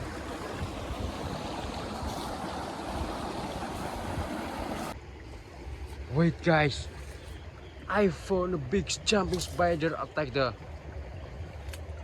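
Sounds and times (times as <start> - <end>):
steady rushing outdoor noise: 0.0 - 7.5.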